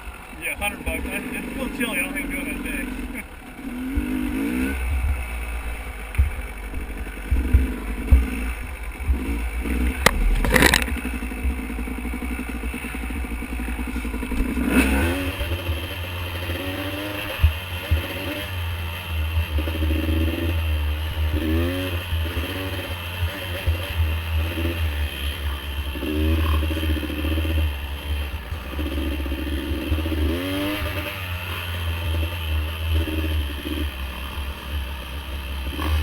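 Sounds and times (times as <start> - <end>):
dirt bike engine revving: 0.0 - 36.0
sharp knocks and clatters: 6.1 - 11.6.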